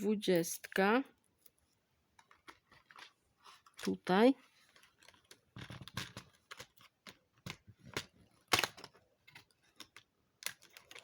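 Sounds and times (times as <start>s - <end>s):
packaging clicks and scrapes: 4.6s - 11.0s.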